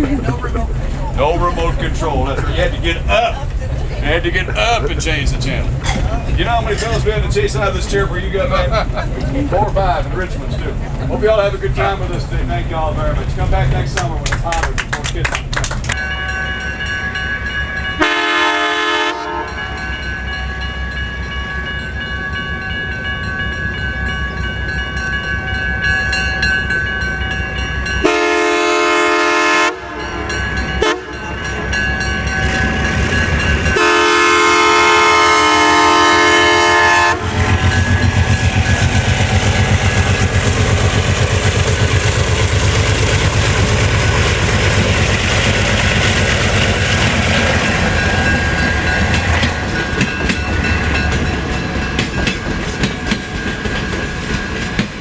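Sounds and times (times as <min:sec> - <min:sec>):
train wheels clattering on rails: 0:00.0 - 0:16.9, 0:35.1 - 0:55.0
locomotive air horn blasts: 0:18.0 - 0:19.8, 0:28.0 - 0:31.4, 0:33.7 - 0:37.9.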